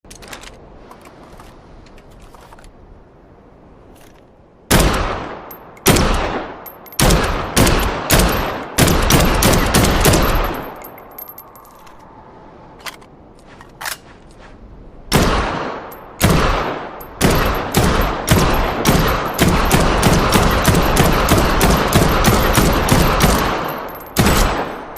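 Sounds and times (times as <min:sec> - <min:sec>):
rifle shots echoing: 0:04.7 - 0:10.8, 0:15.1 - 0:24.9.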